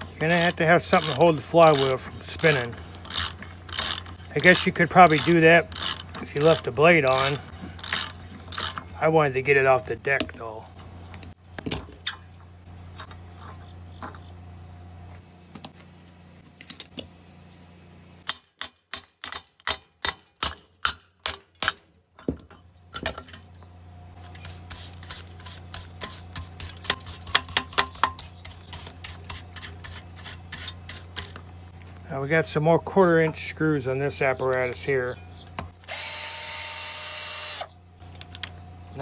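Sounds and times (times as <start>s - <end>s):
hand tools clicking on metal: 0.2s - 8.9s.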